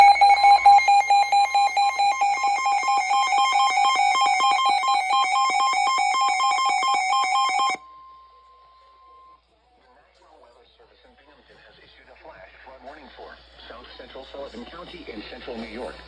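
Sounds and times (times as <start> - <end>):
rapid shrill electronic beeps: 0.0 - 7.8
steady warning alarm tone: 0.0 - 7.8.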